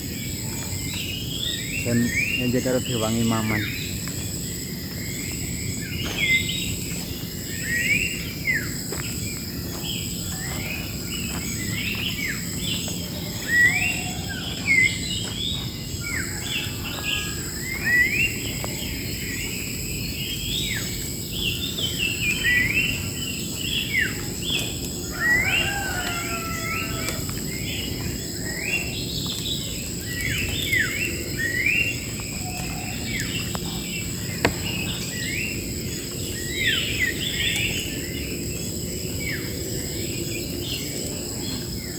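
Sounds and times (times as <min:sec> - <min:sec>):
songbirds chirping: 0:00.0 - 0:41.9
high-pitched insect drone: 0:01.8 - 0:29.1.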